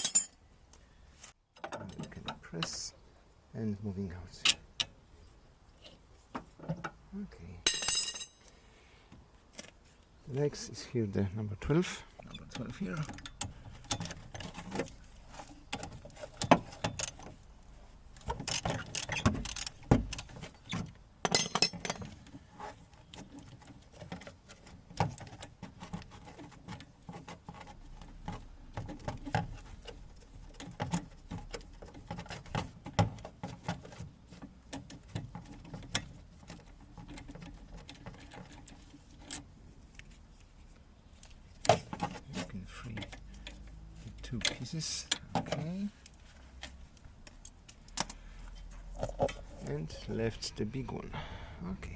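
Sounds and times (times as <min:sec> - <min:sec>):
hand tools clinking on metal: 0:00.0 - 0:00.4, 0:07.6 - 0:08.5, 0:21.2 - 0:22.1.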